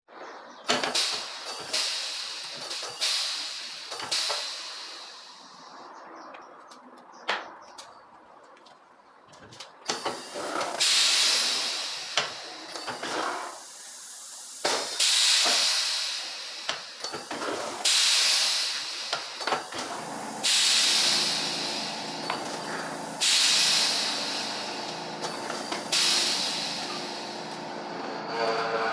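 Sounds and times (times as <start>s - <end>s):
compressed air hissing: 0.7s - 5.7s, 9.9s - 28.4s
steady low hum: 19.8s - 28.9s.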